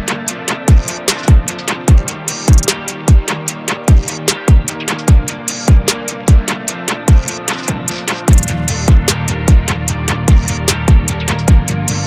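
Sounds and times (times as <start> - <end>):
background music with beat: 0.0 - 12.0
hi-hat ticks: 0.0 - 12.0
deep kick drum: 0.7 - 3.2, 3.9 - 6.4, 8.3 - 12.0.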